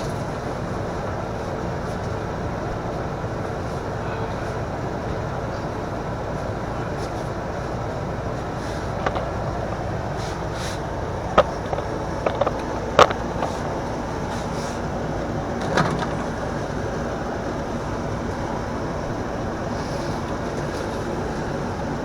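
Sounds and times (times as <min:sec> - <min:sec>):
dish knocking and clattering: 0:09.0 - 0:09.4, 0:11.3 - 0:13.9, 0:15.6 - 0:16.6.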